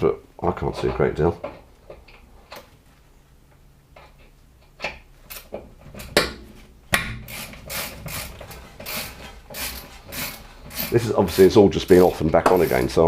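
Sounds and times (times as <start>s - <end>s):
sharp knocks: 6.0s - 7.3s
ratcheting strokes: 7.2s - 13.0s.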